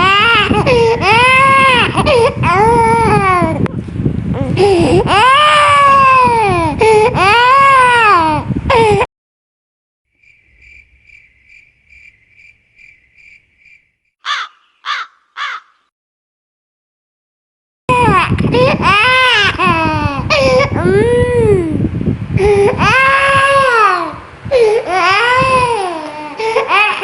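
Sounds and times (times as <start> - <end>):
child crying and wailing: 0.0 - 3.7, 4.4 - 9.1, 17.9 - 21.8, 22.6 - 27.0
faint even chirping: 10.2 - 14.0
loud harsh calls: 14.2 - 15.8.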